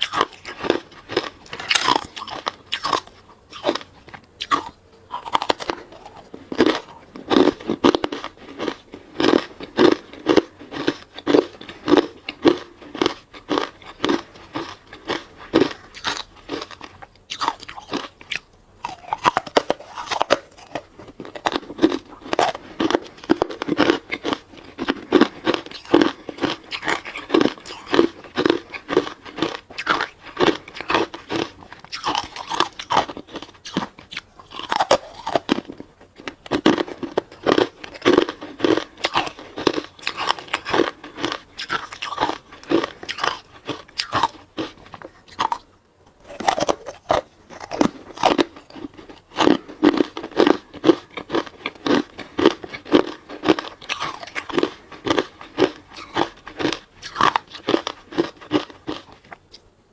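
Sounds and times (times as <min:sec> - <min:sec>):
person chewing hard ice: 0:00.0 - 0:59.6.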